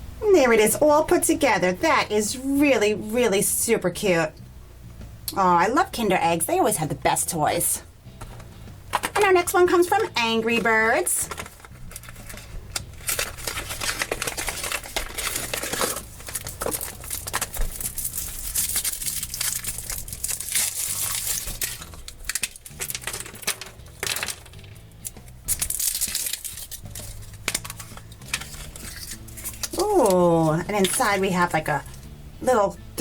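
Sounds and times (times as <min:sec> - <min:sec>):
foil crinkling and tearing: 0:10.6 - 0:32.1.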